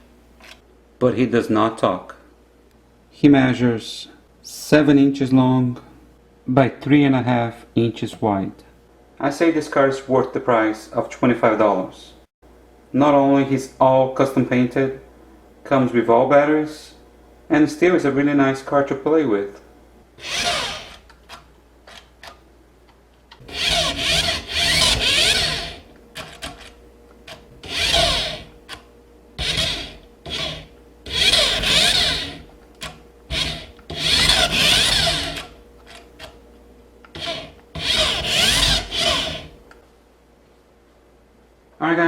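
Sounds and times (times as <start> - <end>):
toy car motor whirring: 20.2 - 21.0, 23.5 - 26.5, 27.6 - 28.5, 29.4 - 32.4, 33.3 - 35.5, 37.1 - 39.5.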